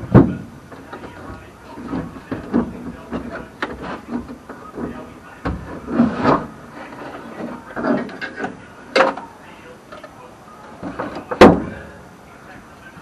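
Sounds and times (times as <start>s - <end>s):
parts and tools knocking: 0.0s - 6.5s.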